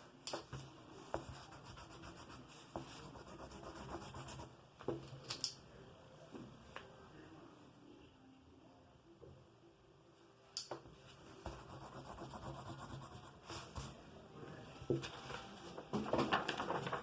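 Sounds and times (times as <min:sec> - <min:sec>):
drawing tool rubbing on surface: 0:11.4 - 0:13.9.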